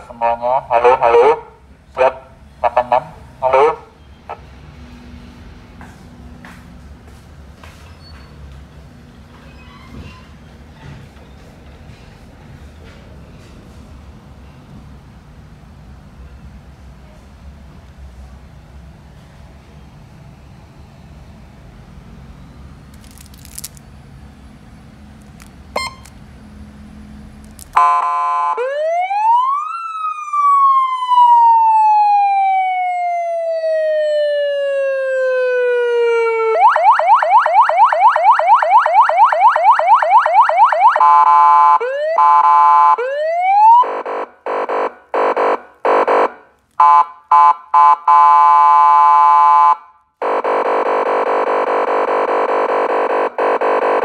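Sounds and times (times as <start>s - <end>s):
electronic police siren: 27.8s - 54.0s.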